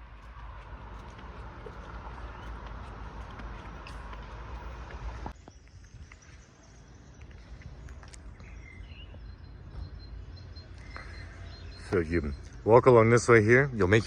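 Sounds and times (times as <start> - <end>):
faint bird chirp: 5.3 - 13.4.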